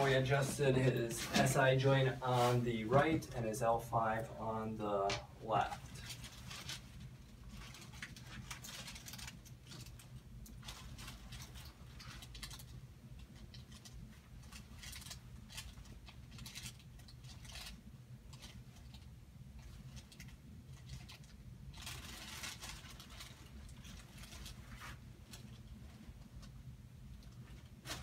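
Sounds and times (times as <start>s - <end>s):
rustling on padded table: 0.0s - 3.3s, 21.8s - 26.2s
low steady hum: 0.0s - 28.0s.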